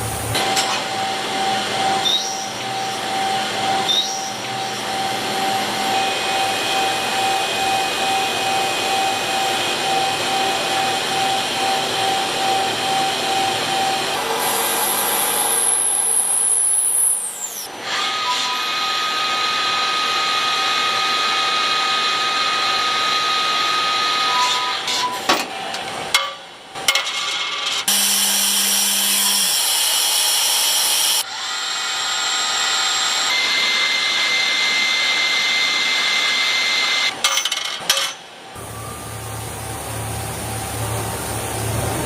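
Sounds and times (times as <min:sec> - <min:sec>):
cnc machine cutting: 0:00.0 - 0:25.0, 0:27.9 - 0:37.1
spindle and tool whine: 0:24.1 - 0:37.5.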